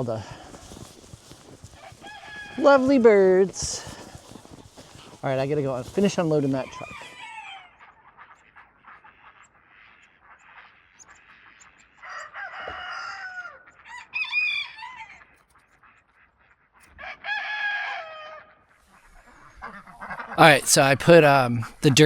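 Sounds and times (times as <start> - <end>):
chickens clucking: 0.0 - 7.5, 19.0 - 22.0
rooster crowing: 1.8 - 2.8, 12.0 - 15.2, 17.0 - 18.5.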